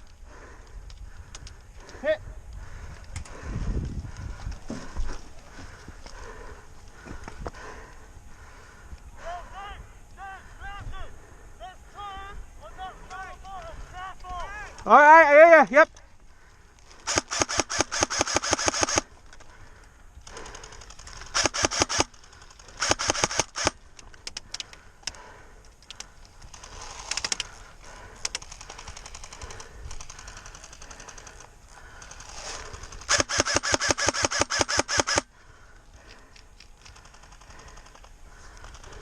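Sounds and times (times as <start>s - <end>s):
airsoft rifle firing bursts: 17.0s - 19.1s, 20.4s - 23.8s, 32.0s - 35.3s
faint distant gunfire bursts: 17.0s - 19.1s, 20.4s - 23.8s, 27.9s - 35.3s.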